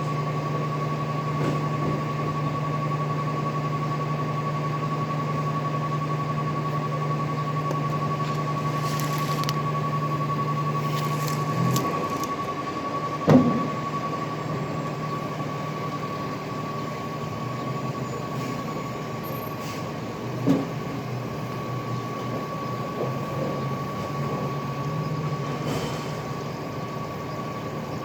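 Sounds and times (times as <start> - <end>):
truck engine running: 3.9 - 19.2.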